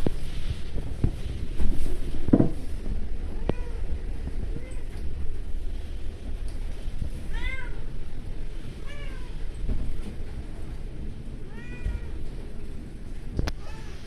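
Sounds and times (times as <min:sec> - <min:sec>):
steady low rumble: 0:00.0 - 0:14.0
cat meowing: 0:07.3 - 0:07.8, 0:11.5 - 0:12.2.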